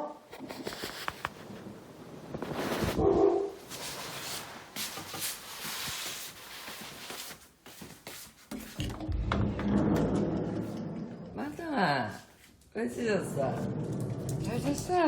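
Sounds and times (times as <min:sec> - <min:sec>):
rustling and rubbing: 0:00.3 - 0:08.8.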